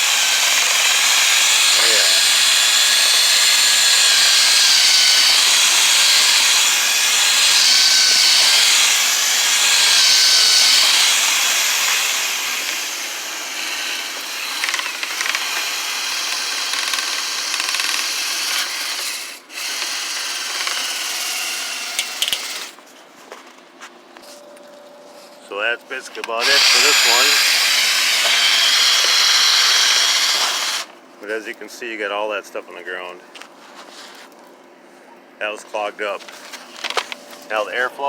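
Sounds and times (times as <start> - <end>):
power drill spinning brush: 0.0 - 22.8, 26.4 - 30.9.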